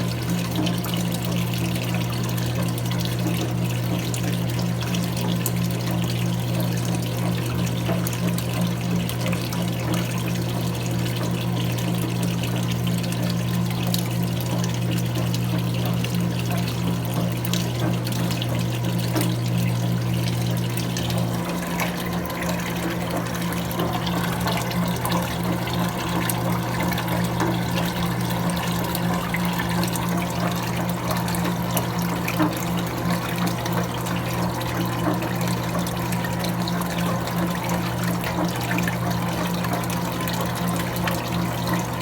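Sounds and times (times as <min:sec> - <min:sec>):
washing machine hum: 0:00.0 - 0:42.0
water rushing and trickling: 0:18.0 - 0:42.0.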